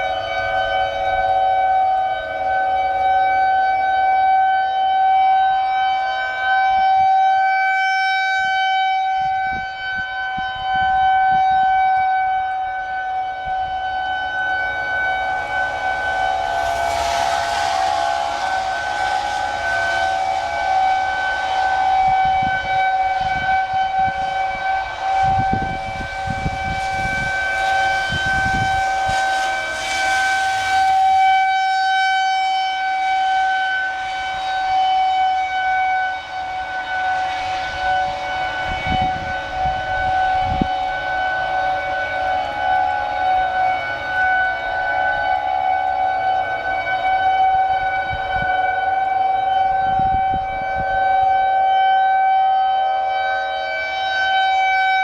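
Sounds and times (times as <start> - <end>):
tornado warning siren: 0.0 - 55.0.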